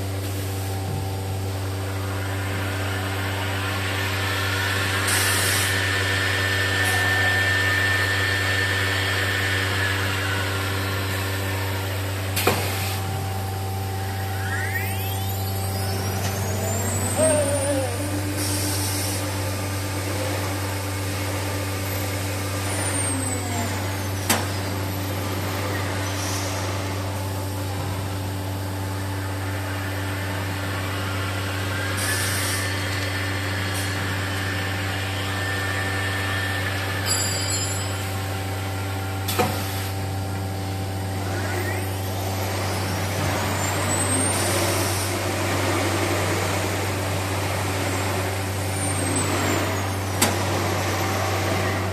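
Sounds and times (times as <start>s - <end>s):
machine low hum: 0.0s - 51.9s
spindle whine sweeping in pitch: 0.6s - 30.1s.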